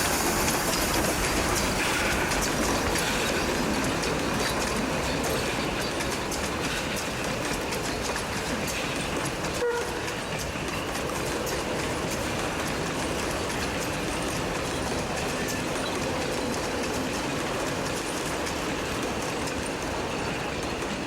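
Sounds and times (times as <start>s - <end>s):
steady rain falling: 0.0s - 21.0s
steam train running past: 0.0s - 21.0s
wheels clicking over rails: 0.0s - 21.0s.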